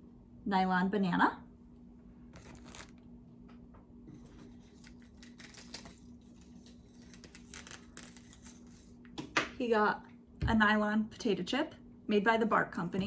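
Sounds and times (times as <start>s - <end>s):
steady low hum: 0.0s - 13.0s
packaging clicks and rustling: 4.4s - 8.6s.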